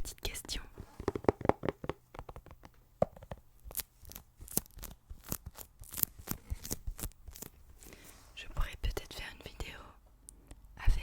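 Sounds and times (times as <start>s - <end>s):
packaging being torn: 3.7s - 7.6s.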